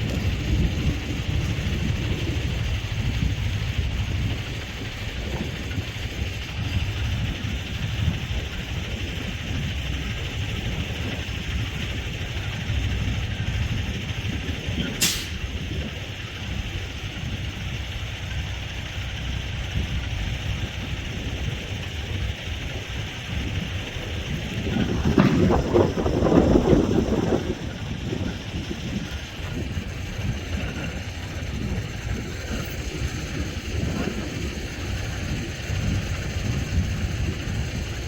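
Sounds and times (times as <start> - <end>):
vehicle engine and road rumble: 0.0 - 38.0
sharp click: 14.9 - 15.4.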